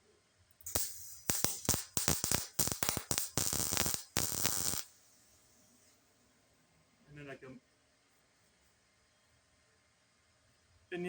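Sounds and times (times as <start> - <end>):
welding arc crackling: 0.6 - 5.0.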